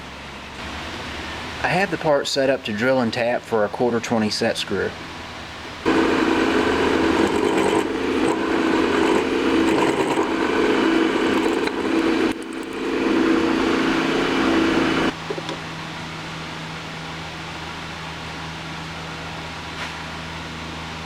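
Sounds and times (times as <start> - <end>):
drill motor hum: 5.8 - 15.2.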